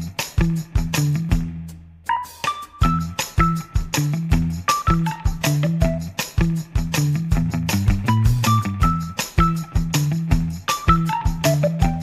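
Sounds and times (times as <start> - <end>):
instrumental music with steady beat: 0.0 - 12.0.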